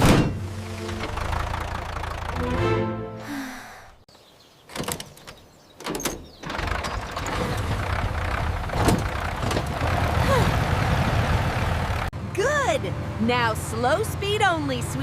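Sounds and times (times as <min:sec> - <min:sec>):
harvester engine running: 0:00.0 - 0:02.9, 0:06.4 - 0:15.0.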